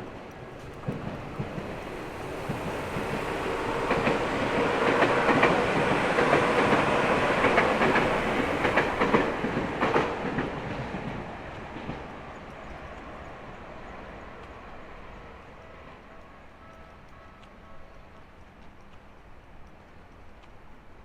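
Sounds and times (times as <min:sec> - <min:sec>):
wheels clacking over rail joints: 0:00.0 - 0:15.4
train passing: 0:00.0 - 0:20.1.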